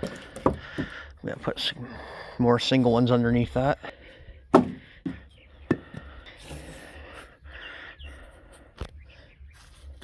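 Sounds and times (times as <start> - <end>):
wood knocks: 0.0 - 1.0, 4.6 - 6.0.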